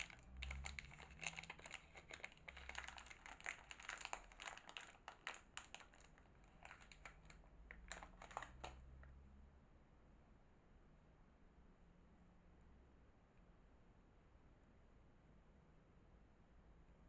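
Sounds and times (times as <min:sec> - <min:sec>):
packaging crinkling: 0:00.0 - 0:08.9.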